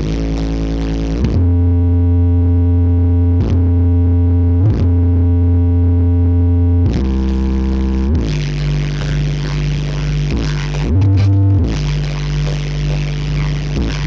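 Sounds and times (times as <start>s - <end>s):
low synthesizer bass notes: 0.0s - 14.0s.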